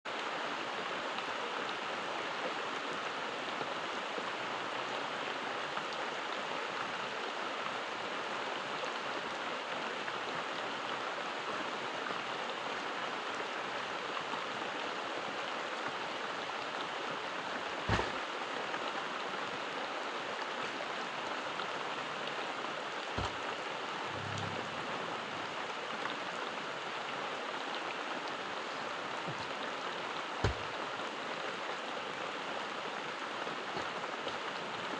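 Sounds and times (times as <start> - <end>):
steady rain falling: 0.0 - 34.9
dull knock: 17.9 - 18.2, 23.2 - 23.4.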